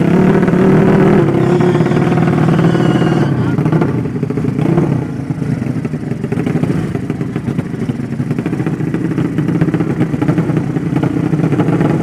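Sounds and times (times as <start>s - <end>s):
motorcycle engine running roughly: 0.0s - 12.0s.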